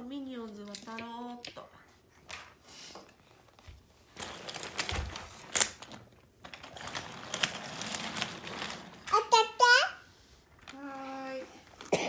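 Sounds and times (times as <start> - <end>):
plastic toys clicking and clattering: 0.2 - 1.7, 4.1 - 9.6.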